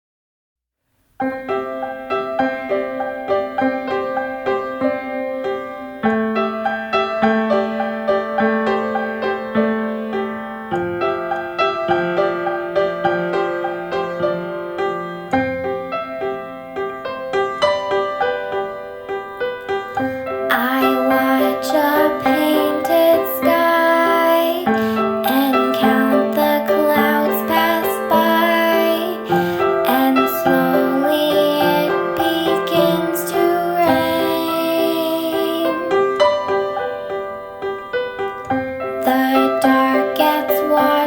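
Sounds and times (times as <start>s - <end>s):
solo piano ballad: 1.0s - 41.0s
person singing: 19.8s - 37.0s, 38.8s - 41.0s.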